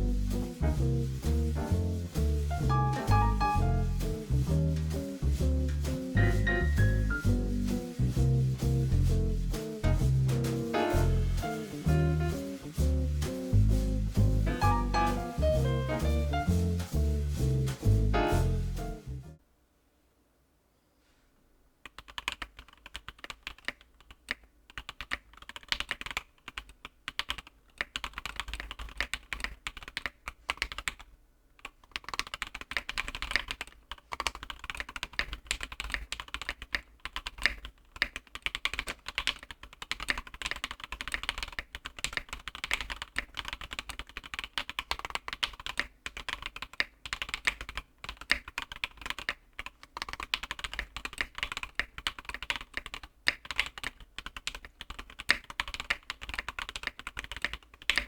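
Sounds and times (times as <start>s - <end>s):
typing on mechanical keyboard: 21.8s - 58.0s.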